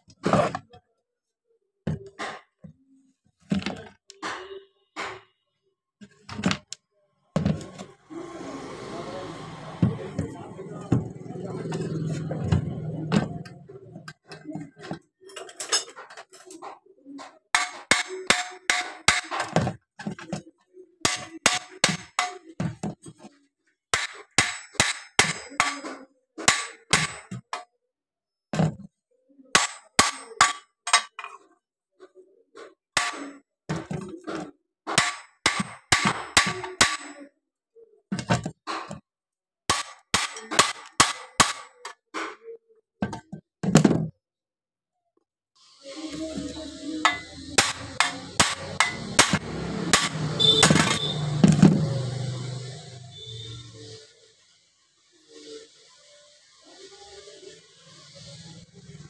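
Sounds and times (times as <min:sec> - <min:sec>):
metal parts being knocked: 0:47.1 - 0:51.8.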